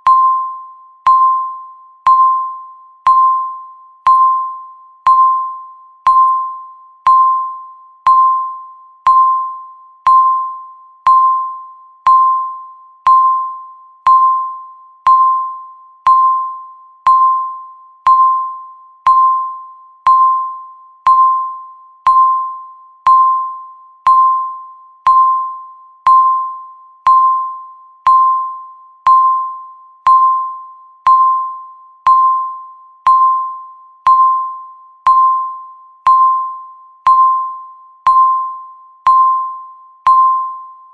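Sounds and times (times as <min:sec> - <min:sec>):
countdown timer beeping: 0:00.0 - 0:40.9.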